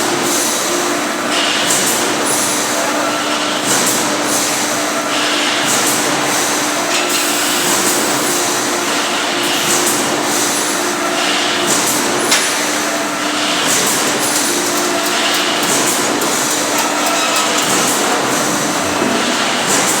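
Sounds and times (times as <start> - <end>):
welding machine hum: 13.4 - 20.0.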